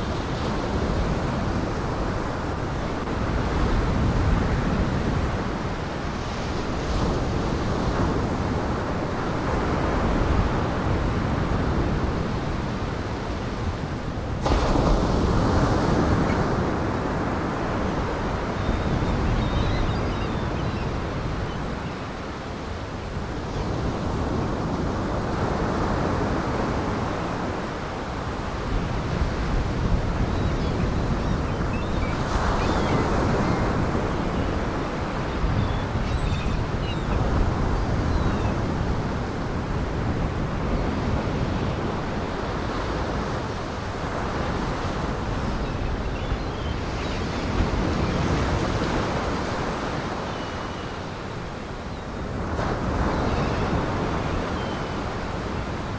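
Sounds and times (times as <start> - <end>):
waves breaking on shore: 14.1 - 22.3.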